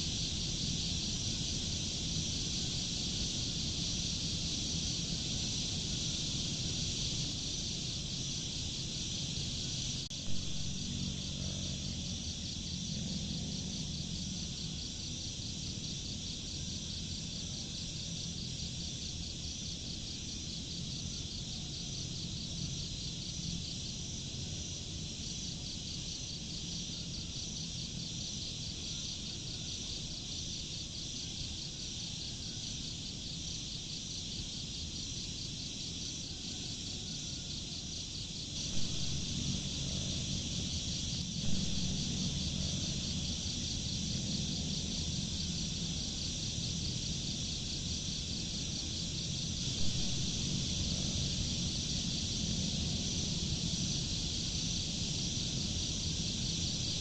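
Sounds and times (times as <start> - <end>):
insects trilling: 0.0 - 57.0
low background rumble: 38.5 - 57.0.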